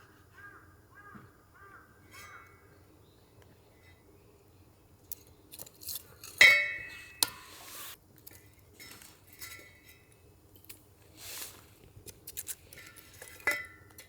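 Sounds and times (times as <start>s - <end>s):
metal clink ringing: 6.4s - 7.4s.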